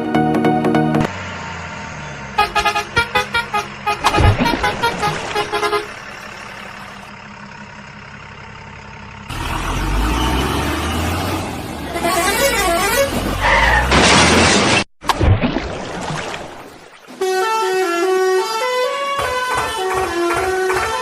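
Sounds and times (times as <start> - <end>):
horn honking: 2.3 - 7.1, 11.2 - 13.9, 17.1 - 21.0.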